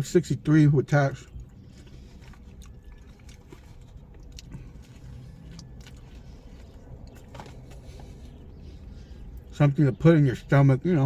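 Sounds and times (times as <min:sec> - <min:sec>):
person chewing food: 0:01.3 - 0:09.5.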